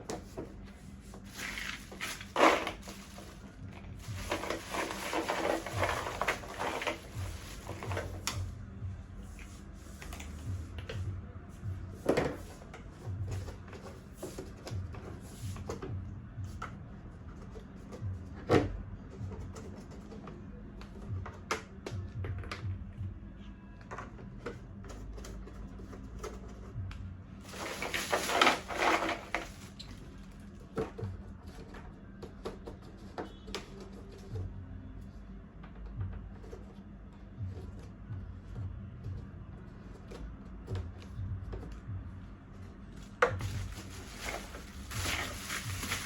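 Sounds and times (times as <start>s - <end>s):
scraping and rattling: 1.2s - 8.2s, 43.4s - 46.0s.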